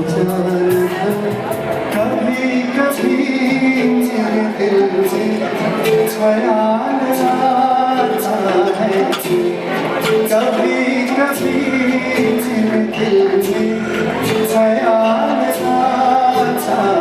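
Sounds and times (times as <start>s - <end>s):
person singing: 0.0s - 17.0s
percussion hits: 7.1s - 17.0s.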